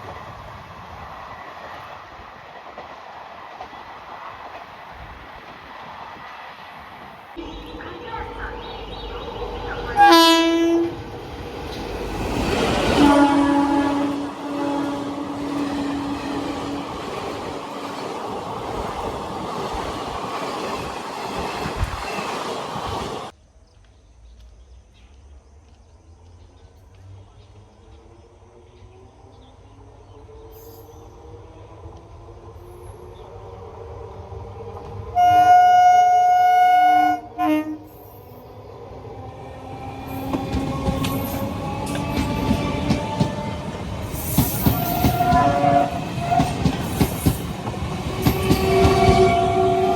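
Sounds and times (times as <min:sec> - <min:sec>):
train passing: 0:00.0 - 0:23.4, 0:26.9 - 0:49.9
locomotive horn blasts: 0:07.4 - 0:11.0, 0:13.0 - 0:17.0, 0:35.2 - 0:37.9, 0:44.8 - 0:46.7, 0:48.3 - 0:49.9.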